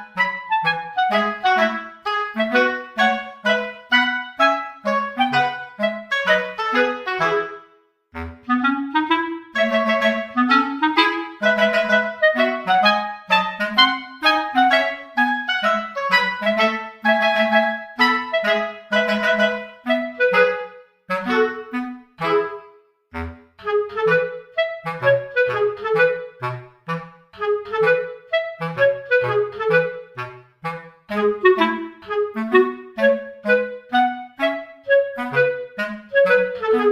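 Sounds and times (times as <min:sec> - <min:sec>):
bouncy woodwind melody: 0:00.0 - 0:36.9.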